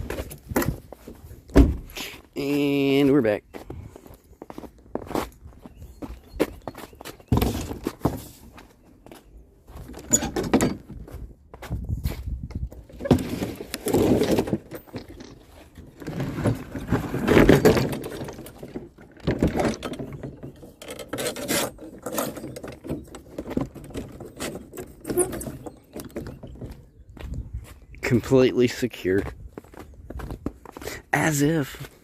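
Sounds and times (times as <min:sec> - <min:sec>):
objects knocking and clattering: 0:09.9 - 0:11.1, 0:12.5 - 0:26.8.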